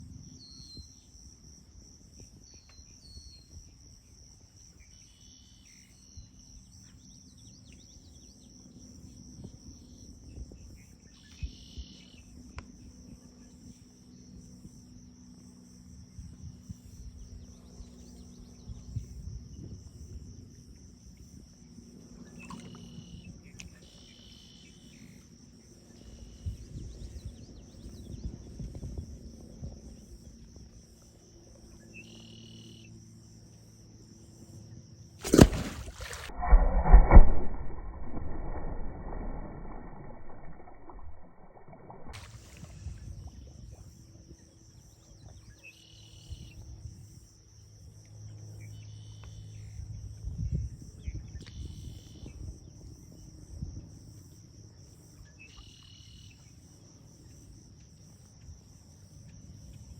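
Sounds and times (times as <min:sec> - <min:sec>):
high-pitched insect trill: 0:00.0 - 0:36.3, 0:40.2 - 0:59.9
low rumble: 0:35.5 - 0:43.8.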